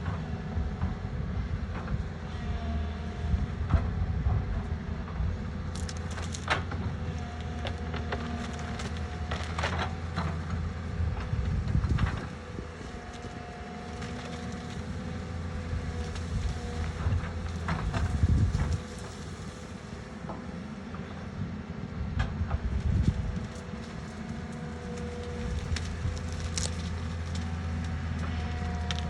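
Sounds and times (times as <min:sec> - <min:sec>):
excavator diesel engine running: 0:00.0 - 0:29.0
wood cracking and splintering: 0:05.6 - 0:19.7, 0:22.8 - 0:29.0.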